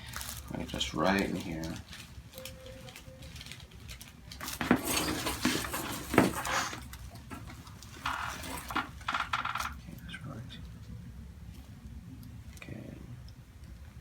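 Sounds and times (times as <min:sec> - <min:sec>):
crinkly rustling: 0:00.0 - 0:09.8
rustling on treatment table: 0:01.2 - 0:09.8.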